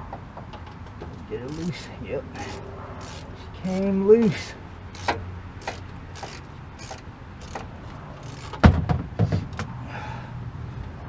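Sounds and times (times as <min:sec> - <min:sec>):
socket ratchet clicking: 0:01.4 - 0:03.9, 0:04.9 - 0:08.6
loud knocks: 0:08.6 - 0:09.6.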